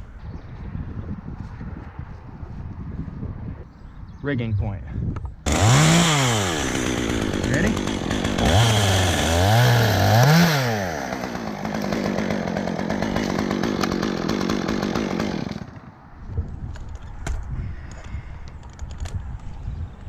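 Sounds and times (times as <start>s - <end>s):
chainsaw revving: 5.5s - 15.9s.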